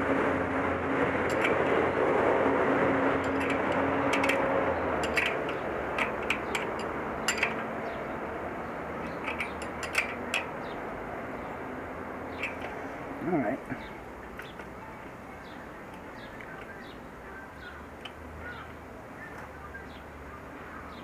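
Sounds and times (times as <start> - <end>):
passing vehicle noise: 0.0 - 21.0
metallic clicks and taps: 3.2 - 7.7, 9.0 - 10.5.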